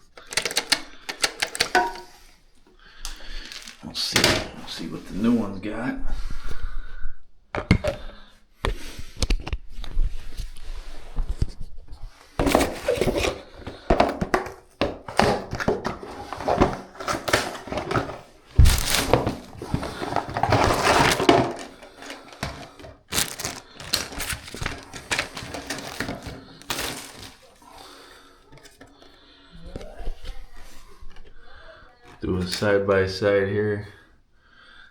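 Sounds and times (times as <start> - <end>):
packaging crinkling: 0.0 - 2.2, 3.0 - 4.4, 12.4 - 29.1
plastic parts clattering: 0.0 - 5.2, 12.3 - 32.9.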